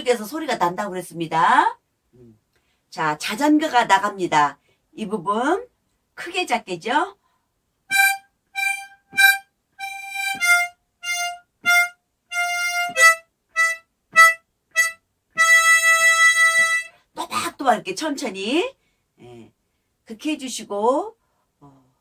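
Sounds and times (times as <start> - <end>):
harmonica melody: 7.9 - 17.0.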